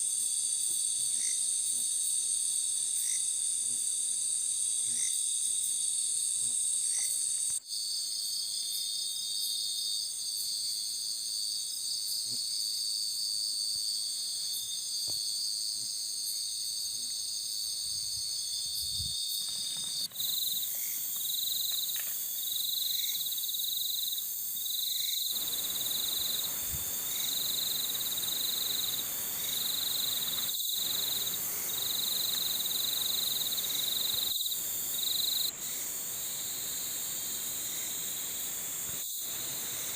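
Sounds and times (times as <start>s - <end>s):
crickets trilling: 0.0s - 39.9s
pulsing insect call: 14.5s - 39.9s.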